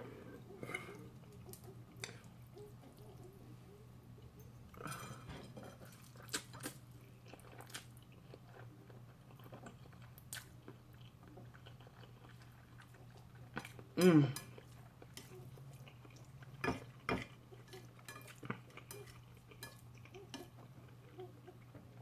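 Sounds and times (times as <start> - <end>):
faint low hum: 0.0 - 22.0
person chewing food: 5.7 - 22.0.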